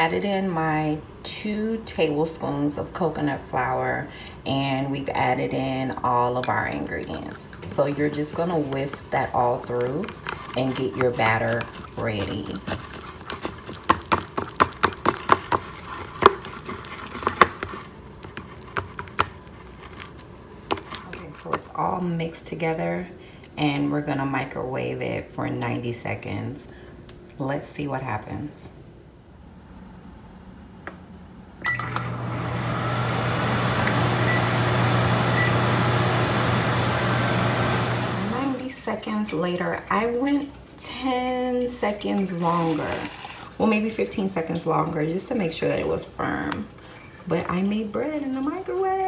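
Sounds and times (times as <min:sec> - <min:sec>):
microwave oven clicks: 0:31.6 - 0:32.2
microwave oven humming: 0:31.6 - 0:38.6.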